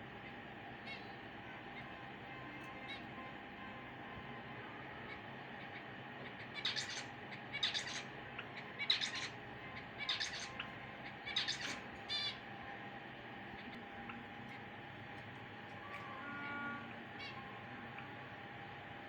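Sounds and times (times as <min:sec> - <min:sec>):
sparrow chirping: 0:05.6 - 0:12.4.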